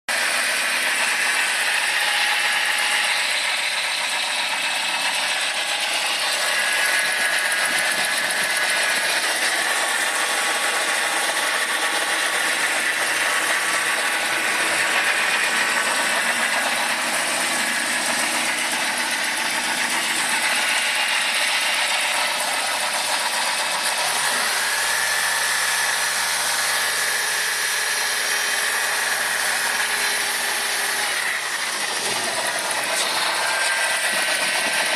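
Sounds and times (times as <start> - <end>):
engine running with metallic rattle: 0.1 - 34.9.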